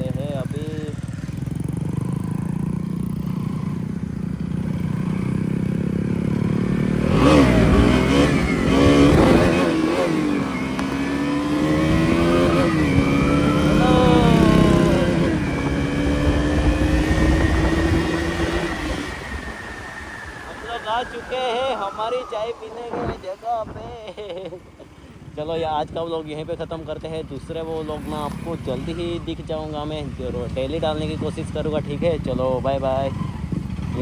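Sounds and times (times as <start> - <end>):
motorcycle engine accelerating: 0.0 - 34.0.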